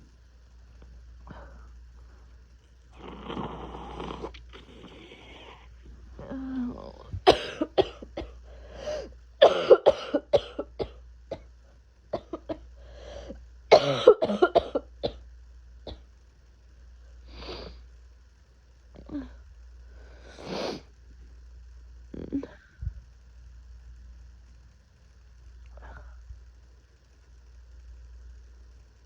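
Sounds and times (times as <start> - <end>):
person coughing: 7.2 - 11.5, 13.7 - 15.2
noisy breath: 8.4 - 9.2, 12.7 - 13.4, 17.0 - 17.9, 19.1 - 21.0.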